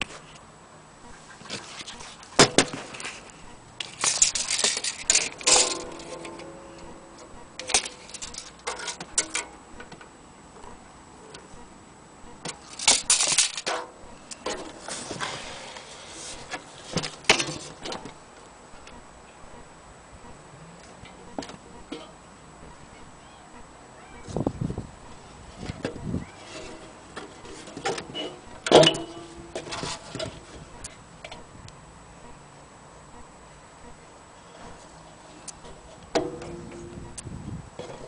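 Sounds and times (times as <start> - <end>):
banjo being handled: 3.9 - 6.9, 25.7 - 30.6
banjo string ringing: 5.4 - 9.4, 28.1 - 30.2.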